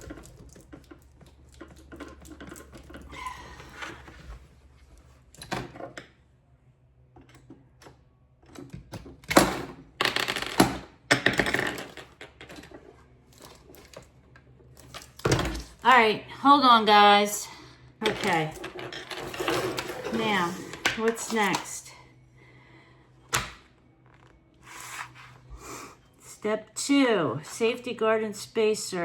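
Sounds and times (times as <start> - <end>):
handling and scraping noises: 18.0 - 21.8, 24.0 - 25.6.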